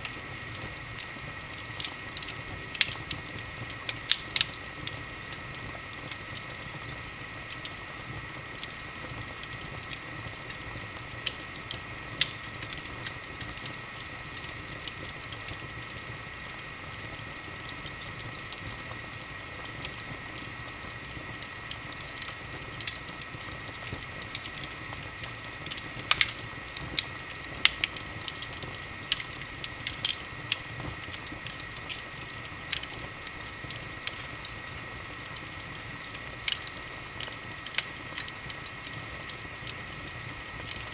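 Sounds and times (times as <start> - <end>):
wood fire crackling and popping: 0.0 - 40.9.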